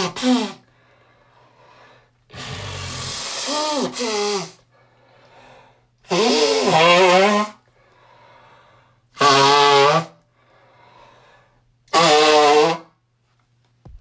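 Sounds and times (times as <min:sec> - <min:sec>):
person blowing nose: 0:00.0 - 0:00.7, 0:02.3 - 0:04.6, 0:06.1 - 0:07.6, 0:09.2 - 0:10.2, 0:11.9 - 0:13.0
soft breathing: 0:00.7 - 0:02.3, 0:04.6 - 0:06.0, 0:07.7 - 0:09.1, 0:10.3 - 0:11.7.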